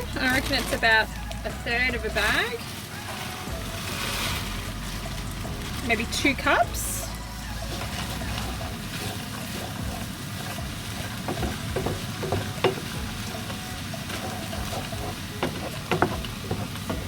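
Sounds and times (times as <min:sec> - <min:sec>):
vegetables sizzling in a frying pan: 0:00.0 - 0:17.0
spoon scraping a pan: 0:03.0 - 0:06.9, 0:07.6 - 0:17.0.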